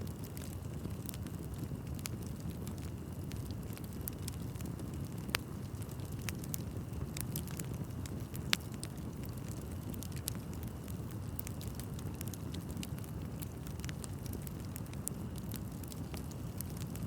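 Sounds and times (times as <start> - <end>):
fire rumbling: 0.0 - 17.0
wood crackling and popping: 0.0 - 17.0.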